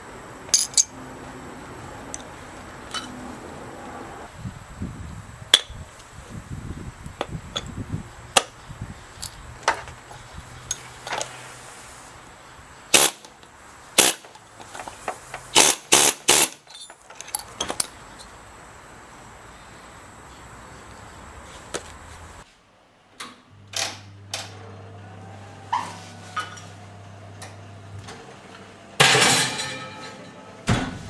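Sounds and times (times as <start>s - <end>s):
metal parts clicking and knocking: 0.5s - 0.9s, 14.0s - 18.3s.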